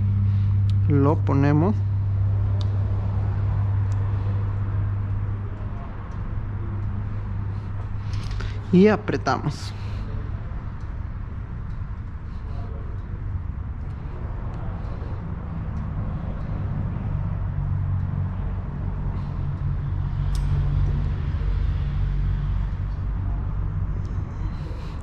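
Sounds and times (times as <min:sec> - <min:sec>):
steady hum: 0:00.0 - 0:25.0
vehicle engine rumbling: 0:00.0 - 0:25.0
light clicks: 0:02.5 - 0:03.1, 0:19.2 - 0:21.0.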